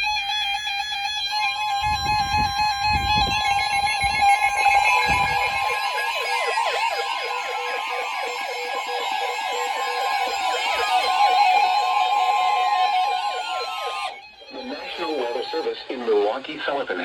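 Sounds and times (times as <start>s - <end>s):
steady alarm tone: 1.4s - 16.3s
warbling siren-like alerts: 1.5s - 15.9s
low thuds: 1.8s - 6.0s.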